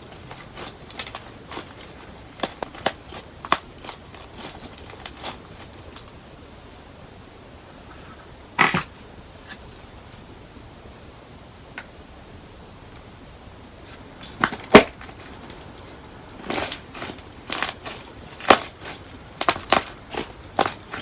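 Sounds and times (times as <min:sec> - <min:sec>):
wax shell cracking: 0:00.0 - 0:06.2, 0:14.2 - 0:21.0.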